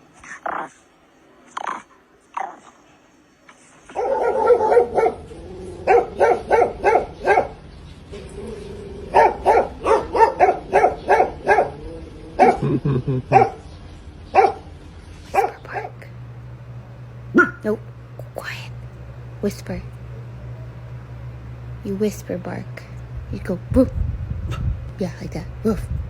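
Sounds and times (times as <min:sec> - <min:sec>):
dog barking: 0:03.9 - 0:07.6, 0:09.1 - 0:11.8, 0:12.4 - 0:12.7, 0:13.3 - 0:13.6, 0:14.3 - 0:14.7, 0:15.3 - 0:15.9, 0:17.3 - 0:17.7.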